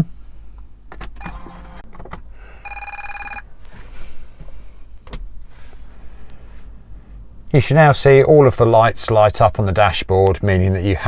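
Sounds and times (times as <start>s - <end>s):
dashboard warning chime: 1.2s - 1.8s, 2.6s - 3.5s.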